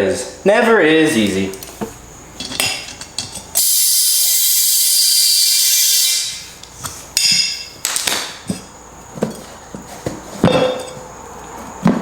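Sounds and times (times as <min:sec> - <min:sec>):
compressed air hissing into tire: 0:03.6 - 0:07.0.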